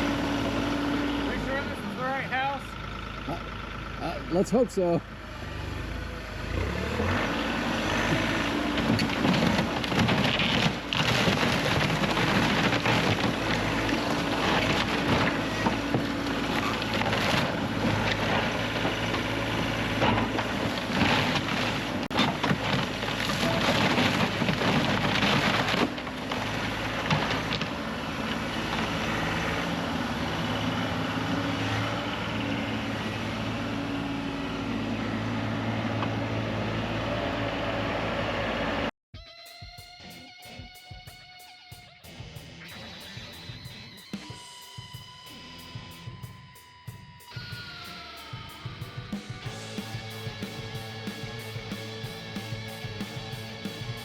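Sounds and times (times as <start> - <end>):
heavy equipment engine running: 0.0 - 38.9, 42.1 - 54.0
timber cracking and crashing: 7.9 - 30.4.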